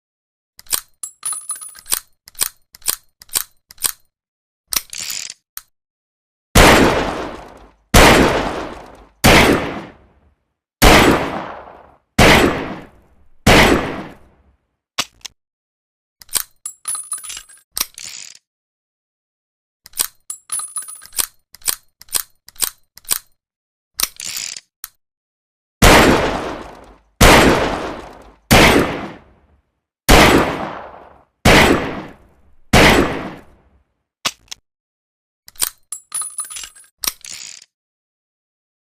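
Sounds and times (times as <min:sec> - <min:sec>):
revolver gunshots echoing: 0:06.6 - 0:10.1, 0:10.8 - 0:14.3, 0:25.8 - 0:29.3, 0:30.1 - 0:33.6.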